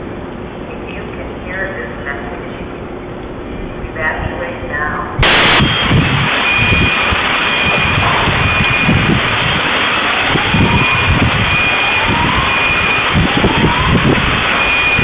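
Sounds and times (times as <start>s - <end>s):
high on-off alarm beep: 5.2s - 15.0s
loud rushing noise: 5.2s - 15.0s
rising alarm whoops: 5.2s - 15.0s.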